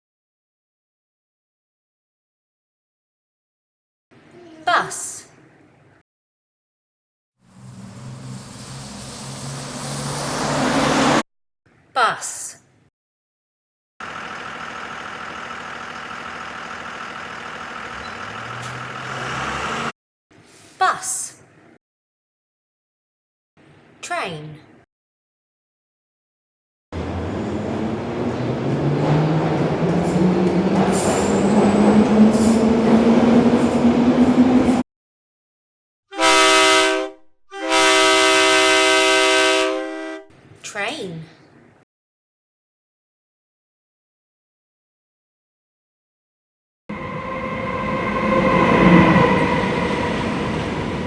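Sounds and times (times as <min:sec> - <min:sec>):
train rumbling: 0:07.5 - 0:11.2, 0:14.1 - 0:19.9, 0:27.0 - 0:34.8, 0:46.9 - 0:51.0
bus engine idling: 0:14.0 - 0:19.9
train horn blasts: 0:36.1 - 0:40.3.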